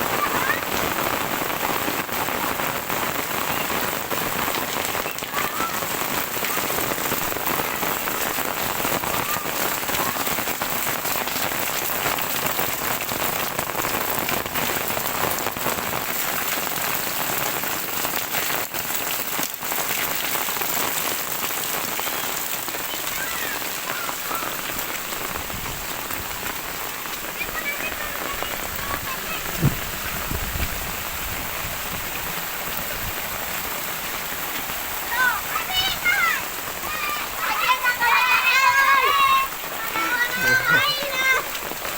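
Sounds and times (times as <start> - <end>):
heavy rain: 0.0 - 41.9
low thump: 29.5 - 30.0.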